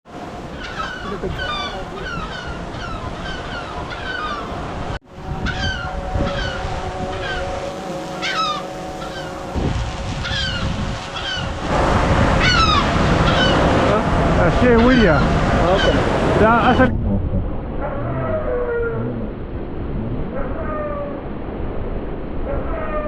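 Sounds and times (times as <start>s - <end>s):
wind: 0.0s - 23.0s
surf: 0.1s - 23.0s
steady hum: 1.3s - 20.4s
birds calling sharply: 8.2s - 9.4s.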